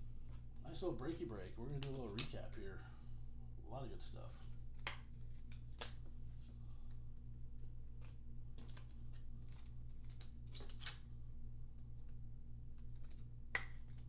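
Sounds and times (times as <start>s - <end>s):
steady low hum: 0.0s - 14.0s
cards sliding and flicking: 1.7s - 2.6s, 4.7s - 7.0s, 7.9s - 11.1s, 11.8s - 14.0s.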